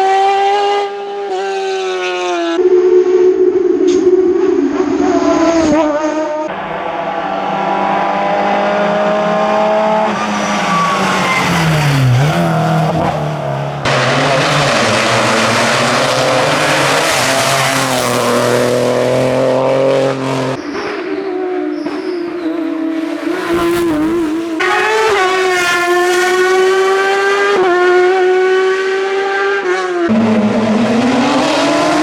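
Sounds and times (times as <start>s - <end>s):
race car engine at high revs: 0.0s - 2.7s, 4.7s - 32.0s
loud rush of noise: 6.5s - 19.6s.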